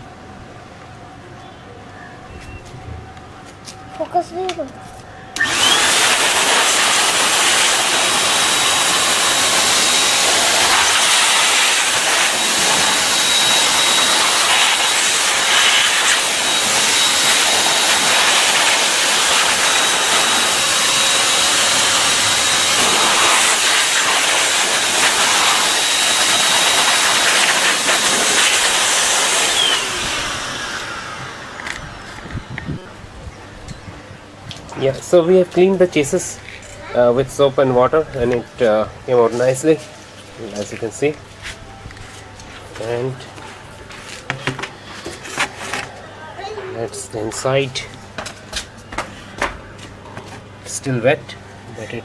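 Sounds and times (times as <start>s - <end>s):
electric air blower rushing: 5.3s - 33.1s.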